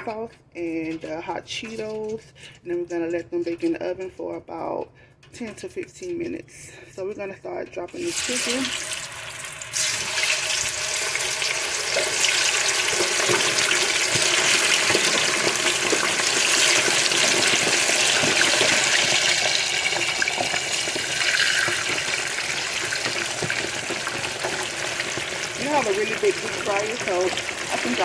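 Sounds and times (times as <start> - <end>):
chicken frying in oil: 7.9 - 28.0.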